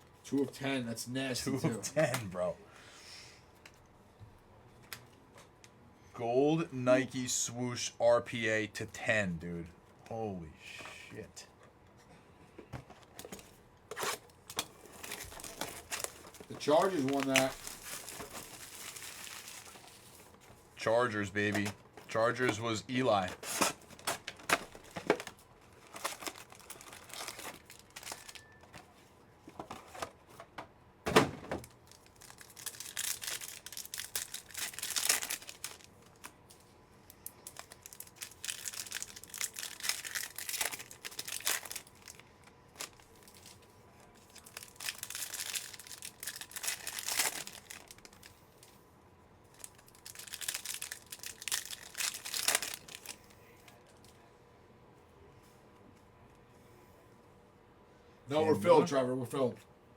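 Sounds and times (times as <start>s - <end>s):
packaging tearing and crinkling: 13.9s - 20.3s, 23.1s - 28.4s, 31.6s - 36.3s, 37.4s - 42.2s, 42.8s - 43.6s, 44.2s - 48.3s, 49.5s - 53.2s.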